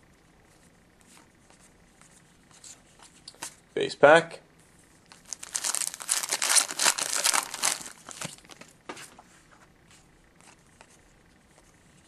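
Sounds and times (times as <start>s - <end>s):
wrapper crinkling and tearing: 5.1s - 8.6s.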